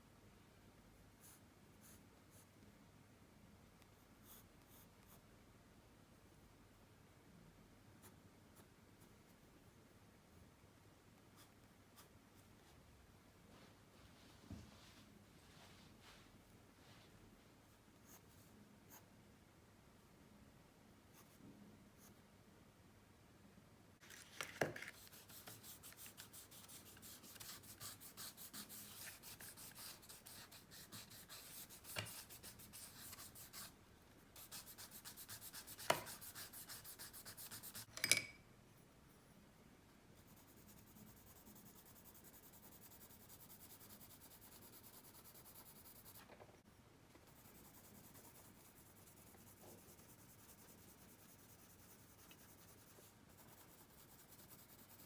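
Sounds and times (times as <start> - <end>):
soft rubbing on paper: 11.4 - 19.1, 24.0 - 37.9, 47.2 - 55.0
pencil shading on paper: 25.0 - 33.7, 34.4 - 37.9, 40.2 - 46.2, 47.3 - 55.0
pencil tapping: 30.8 - 33.2, 35.2 - 36.4.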